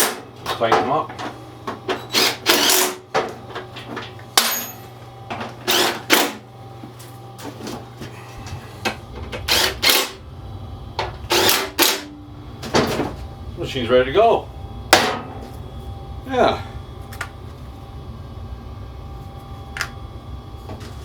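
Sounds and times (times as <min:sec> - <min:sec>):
steady low hum: 0:00.0 - 0:21.0
power drill tightening bolts: 0:02.1 - 0:02.9, 0:09.5 - 0:10.1, 0:11.3 - 0:12.0.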